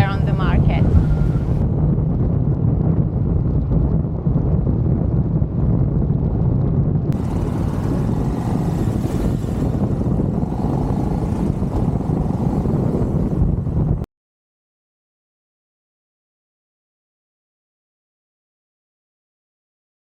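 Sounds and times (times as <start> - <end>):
motorcycle engine rumble: 0.0 - 2.6, 7.2 - 14.0
wind rushing over microphone: 0.0 - 14.1.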